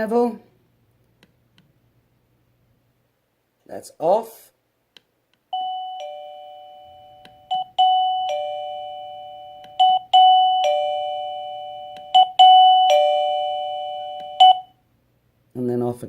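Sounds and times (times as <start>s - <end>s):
doorbell ding-dong chime: 5.5s - 14.8s.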